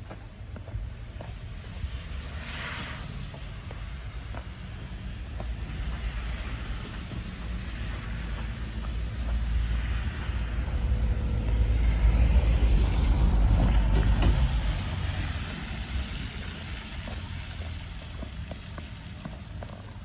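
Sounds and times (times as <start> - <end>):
motor vehicle passing by: 1.6 - 20.0.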